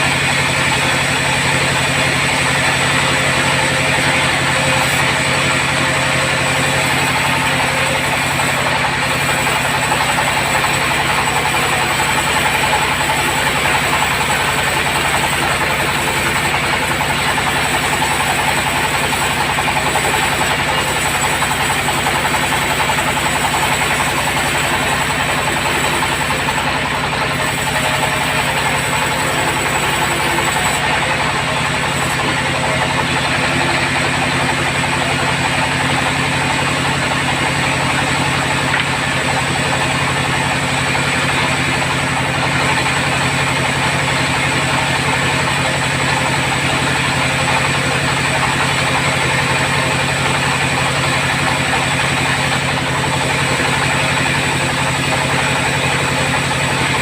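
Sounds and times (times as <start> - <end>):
bandsaw machine drone: 0.0 - 57.0
hissing saw blade: 0.8 - 38.3.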